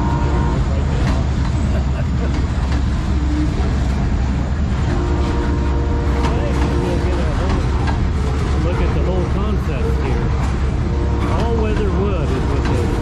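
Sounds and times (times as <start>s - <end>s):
locomotive air horn: 0.0s - 0.8s, 4.9s - 9.0s, 10.8s - 11.6s
diesel locomotive rumbling: 0.0s - 13.0s.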